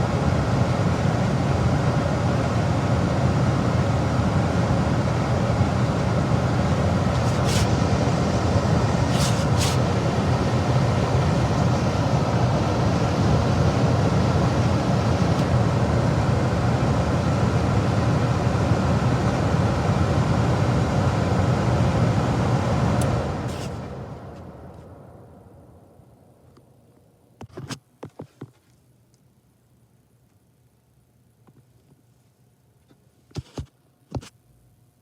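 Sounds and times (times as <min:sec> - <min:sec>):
gas furnace rushing hum: 0:00.0 - 0:27.4.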